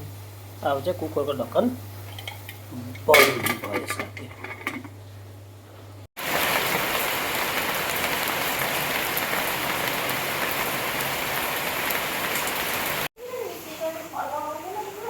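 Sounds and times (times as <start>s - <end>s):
heavy rain hiss: 6.2s - 15.0s.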